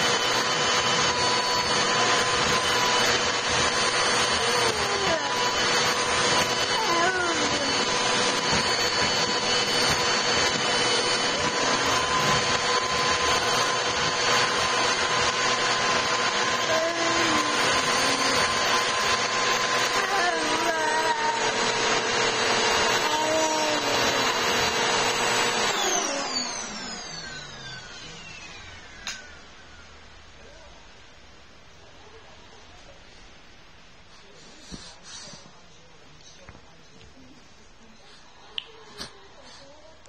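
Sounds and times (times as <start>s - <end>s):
vacuum cleaner motor whine: 0.0s - 30.3s.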